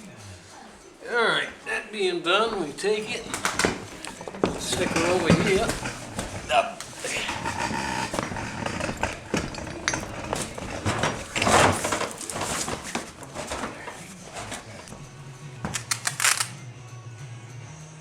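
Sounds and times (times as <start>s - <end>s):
mooring gear clattering: 0.7s - 16.6s
scraping rush: 1.3s - 16.5s
quick run of clicks: 15.7s - 16.6s.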